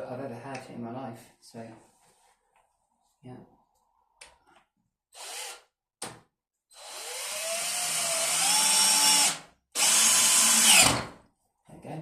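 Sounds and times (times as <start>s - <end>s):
electric drill motor whine: 6.8s - 11.0s.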